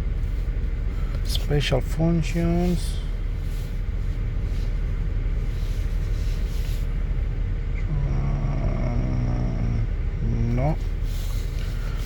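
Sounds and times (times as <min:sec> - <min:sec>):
misfiring car engine rumbling: 0:00.0 - 0:12.0
person speaking: 0:01.3 - 0:03.3.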